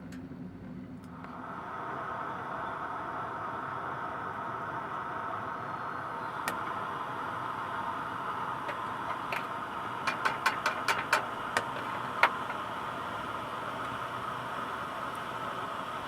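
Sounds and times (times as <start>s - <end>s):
wood fire crackling: 4.9s - 16.0s.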